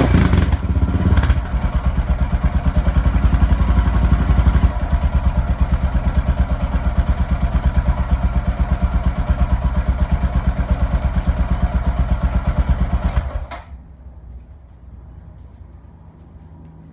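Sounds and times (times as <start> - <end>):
motorcycle engine idling: 0.0 - 13.5.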